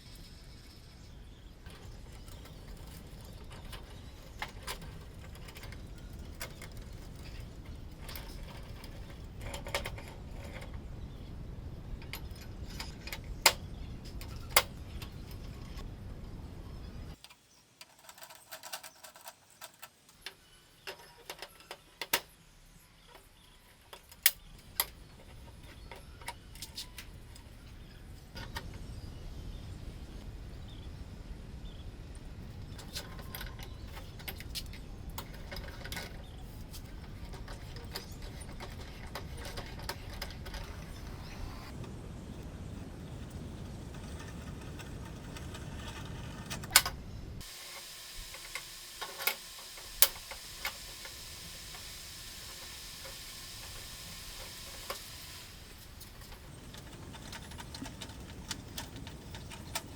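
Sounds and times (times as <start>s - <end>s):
metal tools clicking and knocking: 1.7s - 10.8s, 17.2s - 22.4s, 32.8s - 41.1s, 56.0s - 59.9s.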